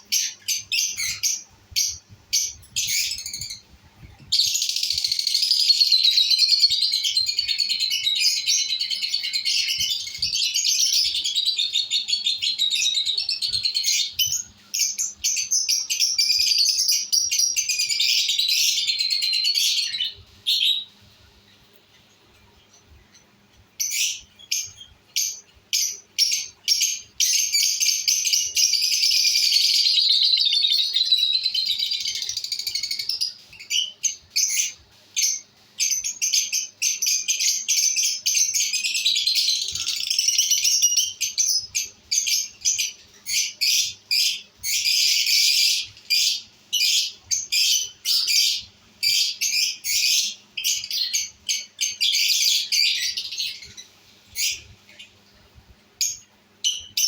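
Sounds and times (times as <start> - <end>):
lovebirds chirping: 0.0 - 57.0.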